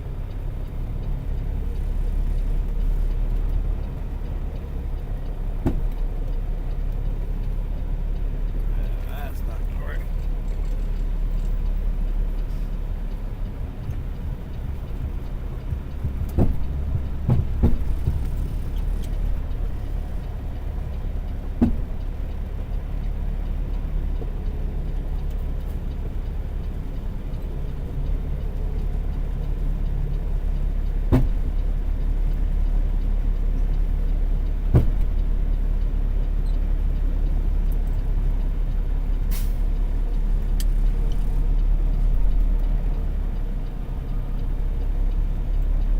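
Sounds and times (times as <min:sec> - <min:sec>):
truck diesel engine rumbling: 0:00.0 - 0:45.9
short knocks: 0:15.7 - 0:18.8.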